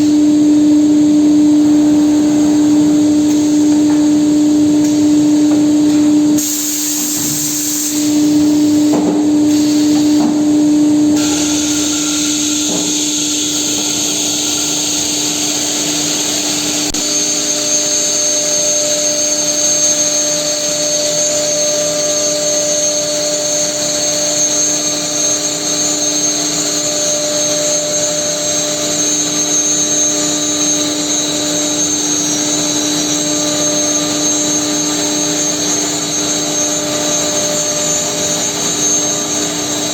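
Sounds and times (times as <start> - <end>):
machine hiss: 6.3 - 18.8
router machine whine: 10.9 - 39.9.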